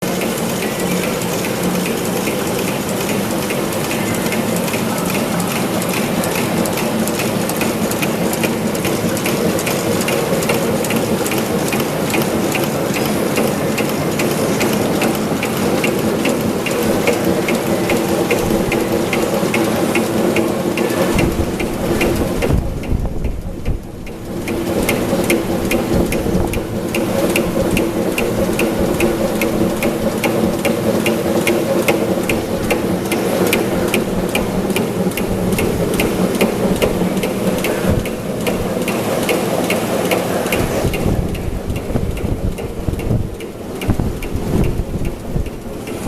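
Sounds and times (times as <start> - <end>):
thread rolling machine clicking: 0.0 - 46.0.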